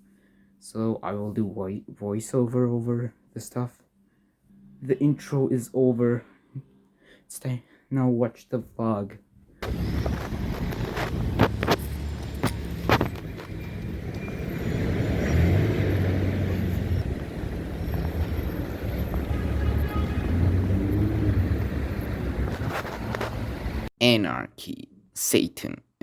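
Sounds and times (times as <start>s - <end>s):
cars driving by: 9.6s - 23.9s.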